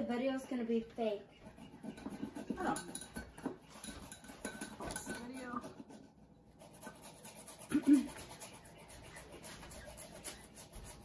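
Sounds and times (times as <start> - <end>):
ginger grating on grater: 4.0 - 11.0.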